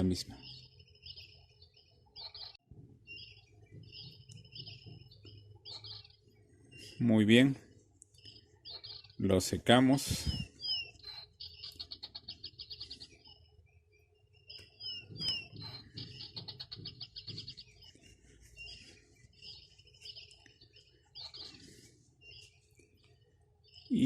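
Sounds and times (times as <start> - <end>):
small bird chirping: 0.0 - 24.0
faint rustling: 14.6 - 23.3.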